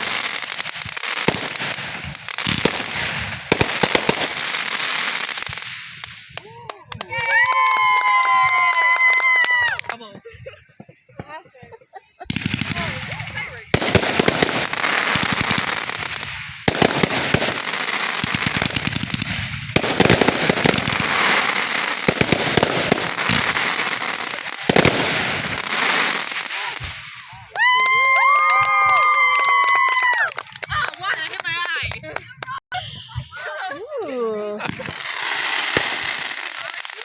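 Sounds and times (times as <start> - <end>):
fireworks crackling: 0.0 - 10.2, 12.2 - 37.0
loud steady whistling tone: 32.7 - 34.3.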